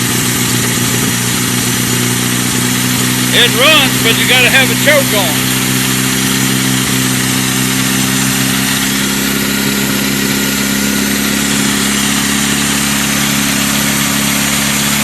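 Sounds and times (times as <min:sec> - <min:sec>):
gasoline engine idling: 0:00.0 - 0:15.0.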